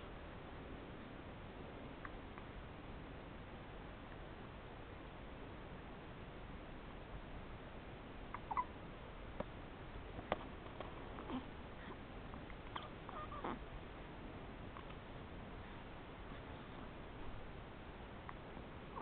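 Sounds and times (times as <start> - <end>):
baby hiccupping: 12.7 - 13.6.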